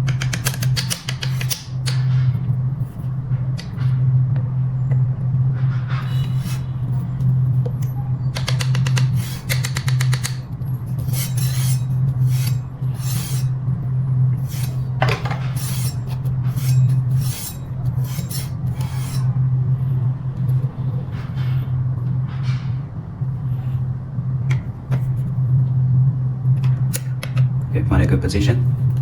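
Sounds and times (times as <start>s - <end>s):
steady low hum: 0.0s - 29.0s
metal scraping: 5.6s - 19.4s.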